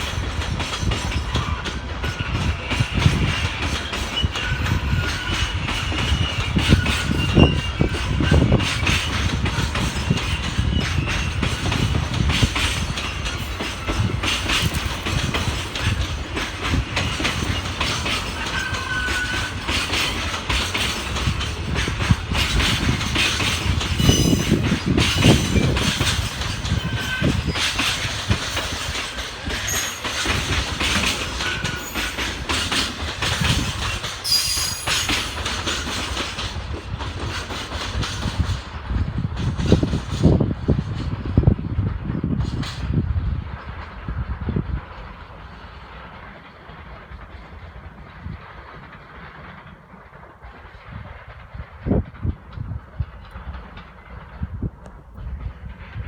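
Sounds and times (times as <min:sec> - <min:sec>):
wheels clacking over rail joints: 0:00.0 - 0:41.4, 0:42.0 - 0:56.0
freight train cars rolling: 0:00.0 - 0:56.0
thin wheel squeals: 0:29.6 - 0:30.3, 0:34.2 - 0:35.4.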